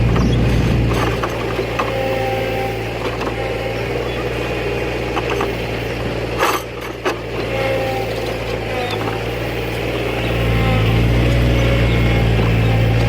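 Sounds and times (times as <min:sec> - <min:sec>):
heavy machine engine running: 0:00.0 - 0:13.0.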